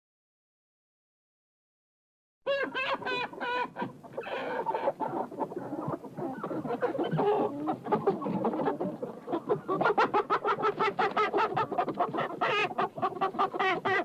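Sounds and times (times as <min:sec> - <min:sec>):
chickens clucking: 0:02.5 - 0:14.0.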